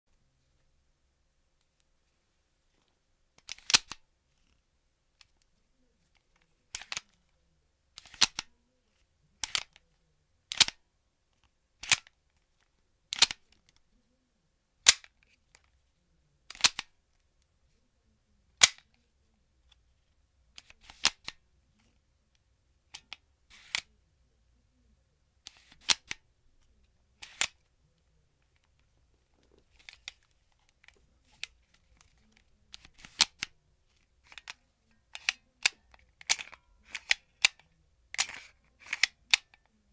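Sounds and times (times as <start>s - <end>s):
model gun mechanism clacking: 8.0s - 8.5s, 10.5s - 10.8s, 16.5s - 16.9s, 34.2s - 39.6s.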